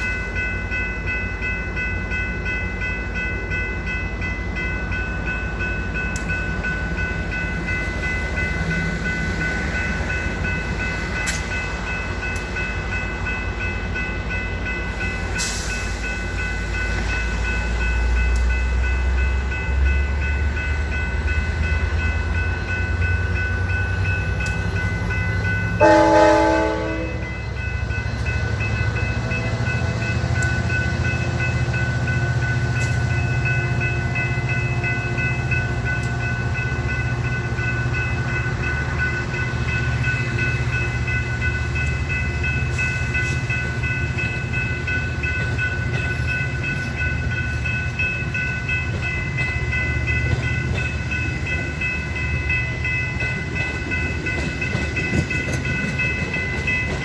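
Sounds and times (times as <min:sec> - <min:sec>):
crossing bell ringing: 0:00.0 - 0:57.0
diesel train engine and wheel rumble: 0:00.0 - 0:57.0
train horn blast: 0:25.8 - 0:27.3.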